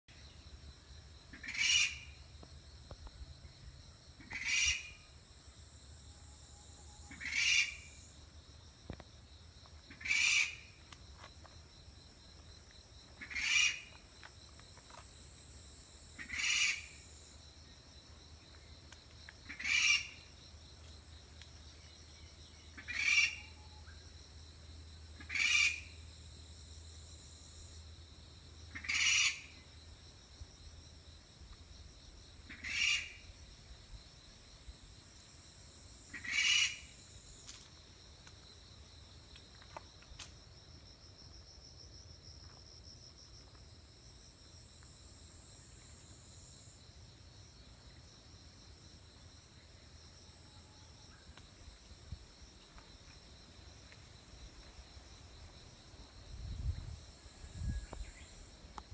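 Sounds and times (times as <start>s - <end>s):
insect chorus: 0.1s - 58.9s.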